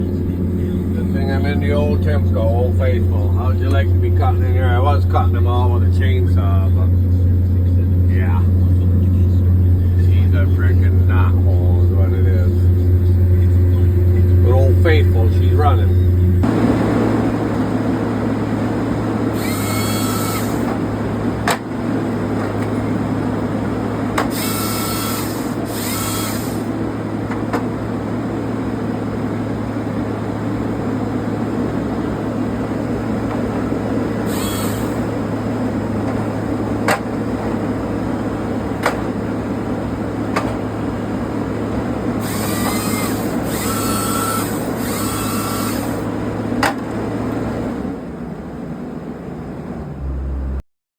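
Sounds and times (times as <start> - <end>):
hydraulic hiss and whine: 0.0 - 21.6, 24.1 - 27.6, 33.4 - 36.0, 42.2 - 46.7
engine droning: 0.0 - 50.6.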